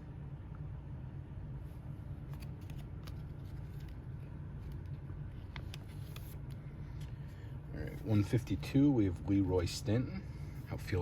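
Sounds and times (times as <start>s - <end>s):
steady low hum: 0.0s - 11.0s
cards and plastic pages rustling: 2.2s - 7.3s.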